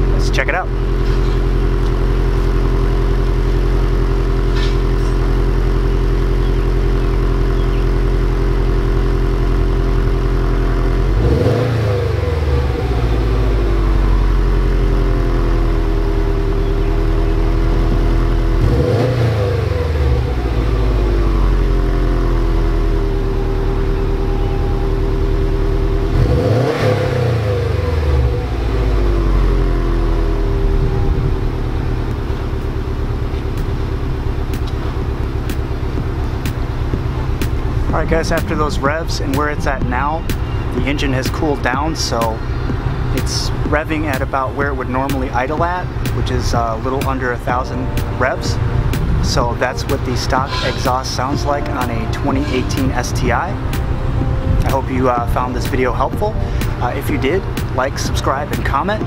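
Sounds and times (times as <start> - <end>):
car engine idling and revving: 0.0 - 59.0.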